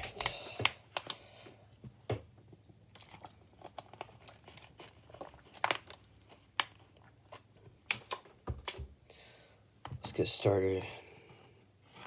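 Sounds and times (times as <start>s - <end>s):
plastic packaging crinkling: 2.9s - 8.8s.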